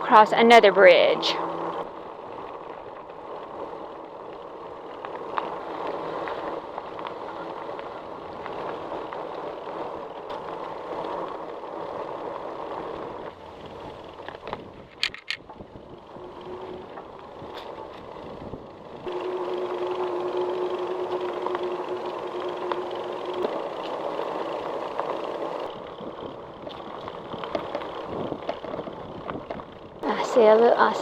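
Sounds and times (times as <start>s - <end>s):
bike tyres rolling on trail: 0.0s - 31.0s
sharp clicks: 14.2s - 15.4s.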